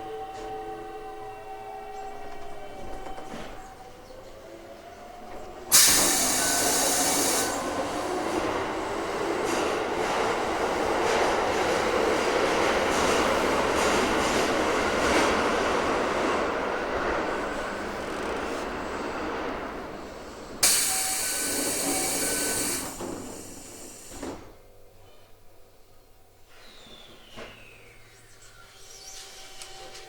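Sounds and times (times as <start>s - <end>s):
train wheels rolling on rails: 5.1s - 24.6s
rail joint clicks: 5.2s - 24.6s.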